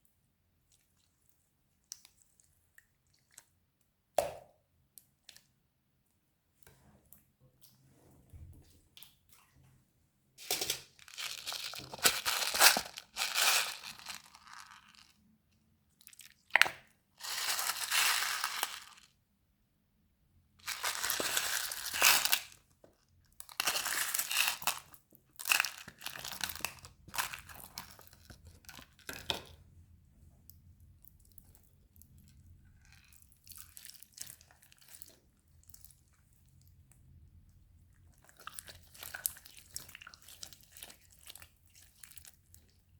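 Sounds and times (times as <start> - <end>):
slime crackling and crunching: 11.0 - 14.9.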